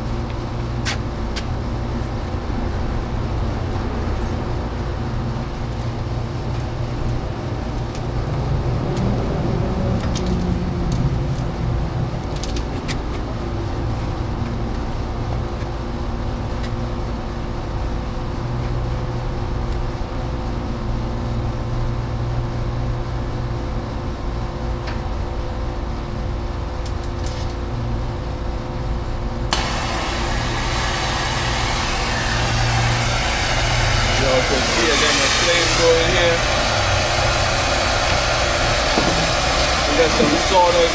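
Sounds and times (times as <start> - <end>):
low engine-like hum: 0.0 - 40.9
loud hiss of gas: 29.5 - 40.9.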